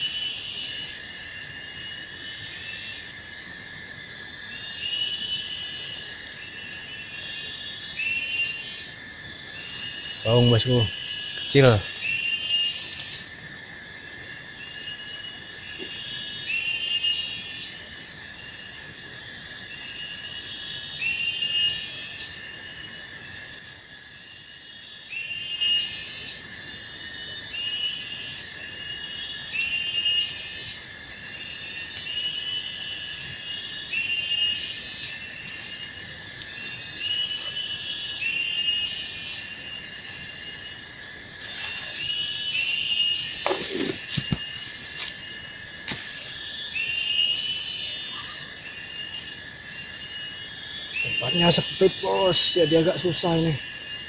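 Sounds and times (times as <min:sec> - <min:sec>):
high-pitched insect drone: 0:00.0 - 0:54.0
loud pulsing frog call: 0:36.8 - 0:45.1, 0:50.0 - 0:53.6.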